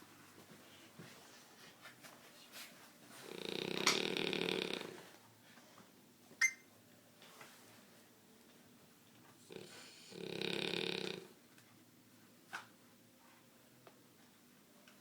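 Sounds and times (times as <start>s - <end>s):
pet snoring: 3.2s - 5.1s, 9.4s - 11.4s.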